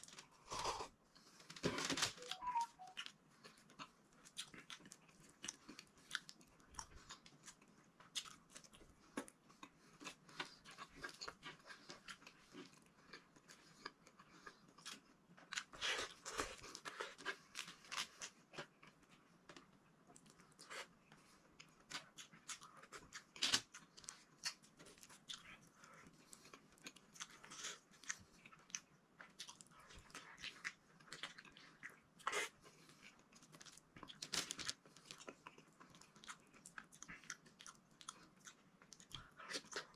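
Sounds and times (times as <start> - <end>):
person chewing food: 0.0 - 39.9.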